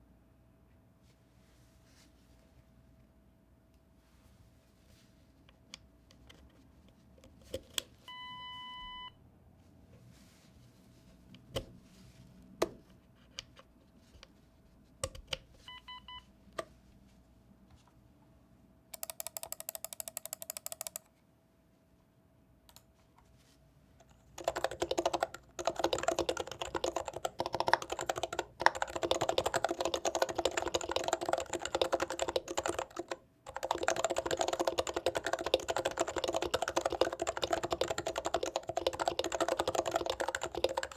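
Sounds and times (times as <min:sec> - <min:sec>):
mechanical keyboard typing: 0:19.0 - 0:21.1, 0:24.4 - 0:40.9.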